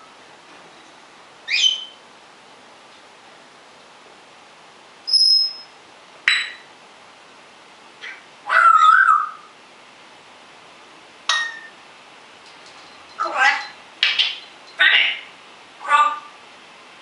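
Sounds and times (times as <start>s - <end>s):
parrot whistling and calling: 1.4s - 2.0s, 5.1s - 5.7s, 8.0s - 9.5s.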